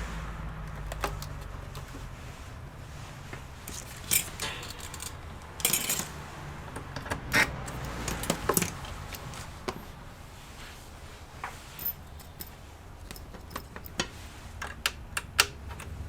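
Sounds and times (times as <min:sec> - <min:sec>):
metallic clinks of tools and screws: 0:03.7 - 0:06.3, 0:07.4 - 0:09.5, 0:11.6 - 0:14.8.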